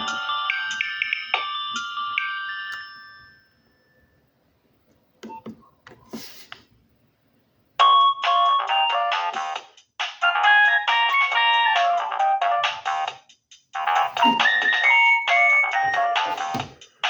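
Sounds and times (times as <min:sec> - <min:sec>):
phone ringtone melody: 0:00.0 - 0:03.5.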